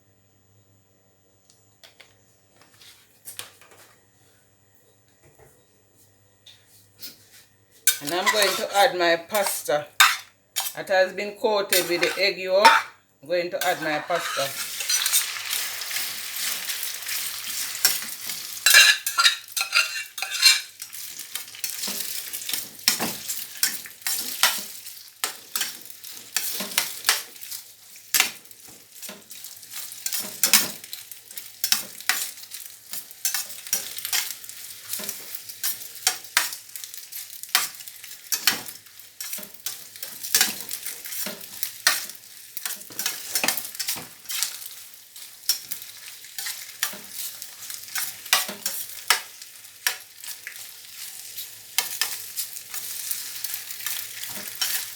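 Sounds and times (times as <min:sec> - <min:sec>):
pasta sizzling in oil: 0:07.9 - 0:10.8, 0:13.6 - 0:54.9
utensil scraping a pan: 0:07.9 - 0:10.8, 0:11.7 - 0:12.9, 0:13.6 - 0:15.4, 0:18.7 - 0:20.8.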